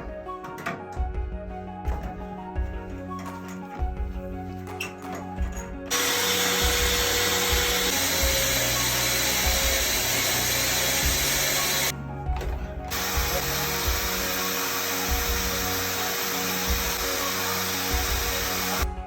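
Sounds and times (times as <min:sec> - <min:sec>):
background music with beat: 0:00.0 - 0:19.0
power tool running: 0:05.9 - 0:11.9, 0:12.9 - 0:19.0.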